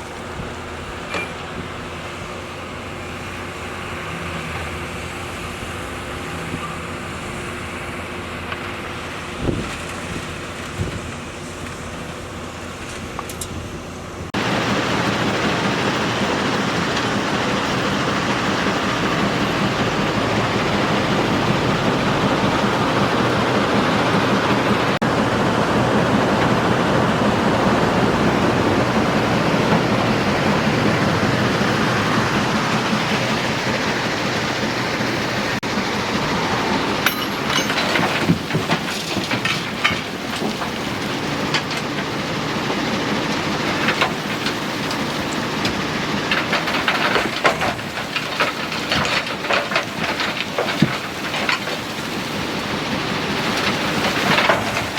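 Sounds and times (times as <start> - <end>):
excavator diesel engine running: 0.0 - 54.9
rattling and clattering: 36.9 - 54.9.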